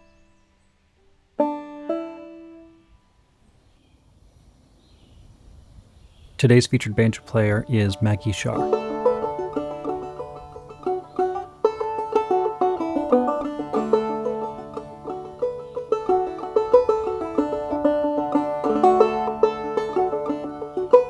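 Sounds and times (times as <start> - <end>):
banjo playing: 1.4 - 2.8, 6.4 - 21.0.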